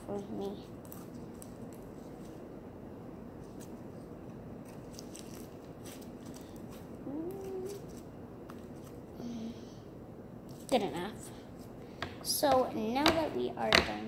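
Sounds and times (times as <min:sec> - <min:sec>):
rising hum-like voice: 0:07.0 - 0:08.0.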